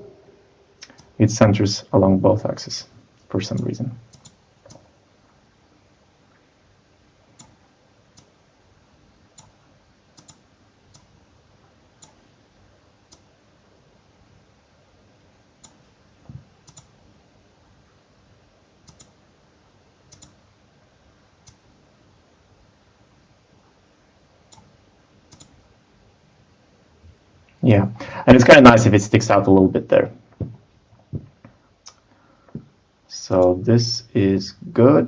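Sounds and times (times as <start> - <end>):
computer mouse clicks: 3.5 - 4.9, 7.4 - 8.3, 9.4 - 9.6, 10.2 - 11.1, 12.0 - 12.2, 13.1 - 13.3, 15.6 - 17.0, 18.8 - 19.2, 20.1 - 20.4, 21.4 - 21.6, 24.5 - 24.7, 25.3 - 25.6
soft low thump: 30.4 - 31.4.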